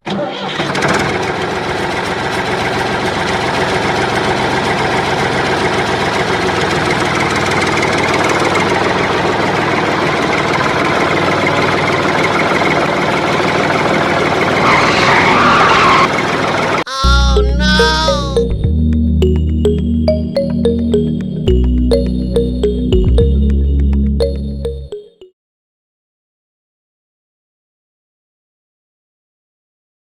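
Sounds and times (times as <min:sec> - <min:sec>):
engine idling with knocking rattle: 0:00.1 - 0:14.6.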